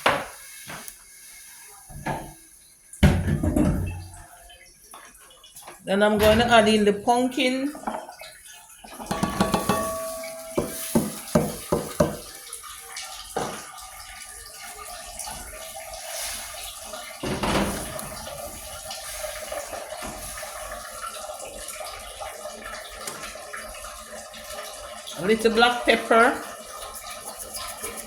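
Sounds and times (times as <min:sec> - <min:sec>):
watery hiss from pot: 0:00.0 - 0:02.8, 0:09.1 - 0:12.4, 0:15.0 - 0:21.3, 0:26.5 - 0:28.0
knocks on pot: 0:09.1 - 0:12.3.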